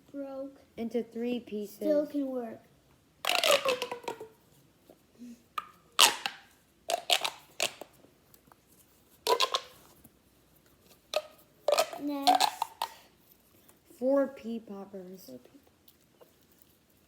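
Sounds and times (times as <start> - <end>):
plastic tube toy popping: 3.2 - 4.4, 5.6 - 8.0, 9.2 - 9.8, 11.1 - 13.0.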